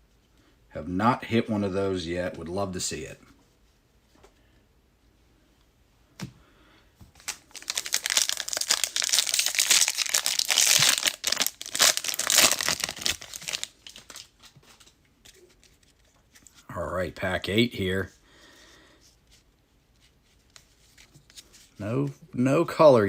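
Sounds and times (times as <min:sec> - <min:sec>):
plastic wrapper tearing and crinkling: 0:07.2 - 0:14.9.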